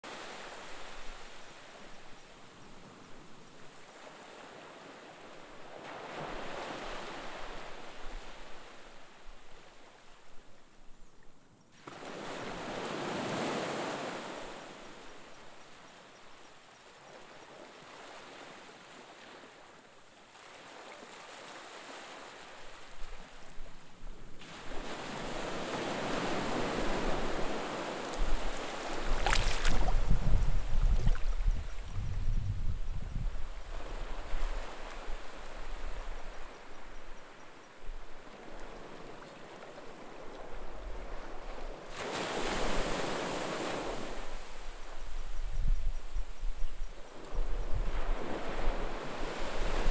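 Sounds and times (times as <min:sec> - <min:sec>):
sea waves breaking on shore: 0:02.6 - 0:10.0, 0:11.8 - 0:15.9, 0:17.6 - 0:23.6, 0:24.4 - 0:31.9, 0:38.2 - 0:45.0.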